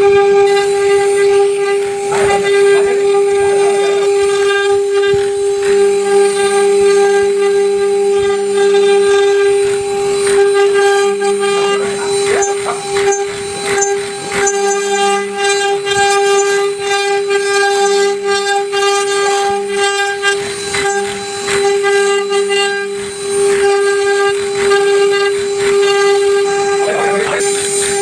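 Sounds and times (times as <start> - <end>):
router spindle whining: 0.0 - 28.0.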